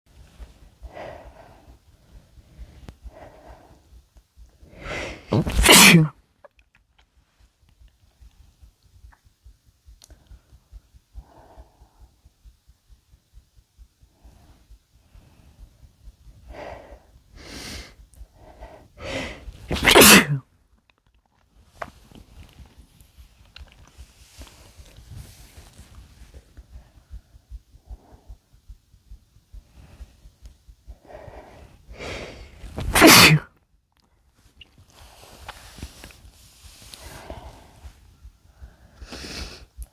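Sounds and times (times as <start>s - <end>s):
catching breaths: 0.2s - 6.1s, 10.1s - 12.5s, 14.0s - 20.4s, 23.9s - 33.4s, 34.9s - 39.9s
man sneezing loudly: 5.3s - 6.1s, 19.7s - 20.4s, 32.8s - 33.4s.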